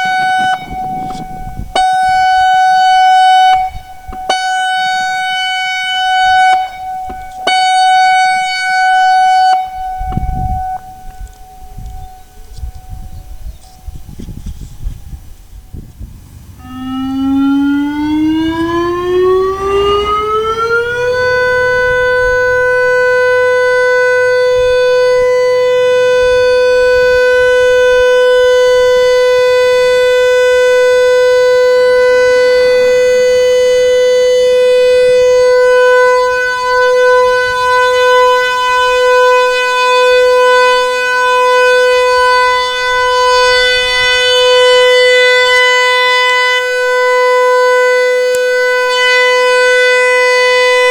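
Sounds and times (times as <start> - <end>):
warning siren rising tone: 0.0 - 50.9.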